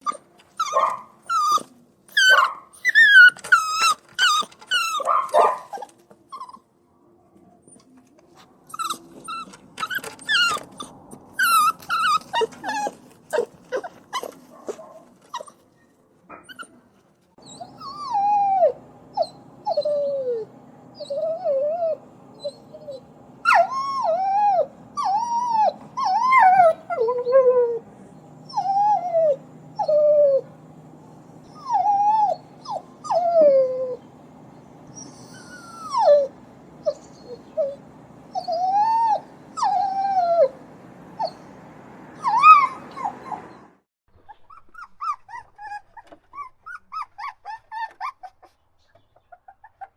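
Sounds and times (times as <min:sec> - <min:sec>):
puppies crying and whining: 0:00.0 - 0:06.7, 0:08.6 - 0:15.6, 0:16.4 - 0:16.8, 0:17.4 - 0:48.6.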